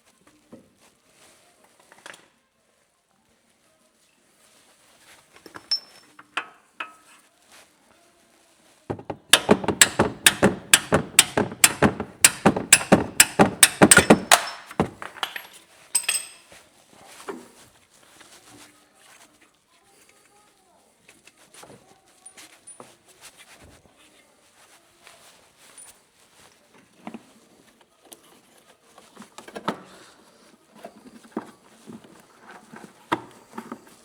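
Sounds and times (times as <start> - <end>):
tools and parts clinking: 5.5 - 6.1, 8.9 - 16.5
hammer striking metal: 8.9 - 15.5.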